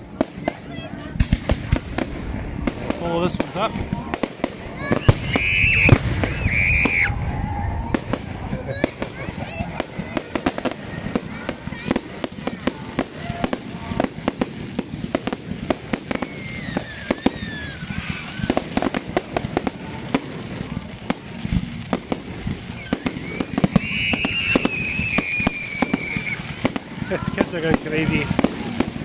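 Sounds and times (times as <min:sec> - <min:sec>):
fireworks bangs and crackles: 0:00.0 - 0:29.0
high-pitched falling squeal: 0:05.1 - 0:07.9, 0:22.8 - 0:26.4.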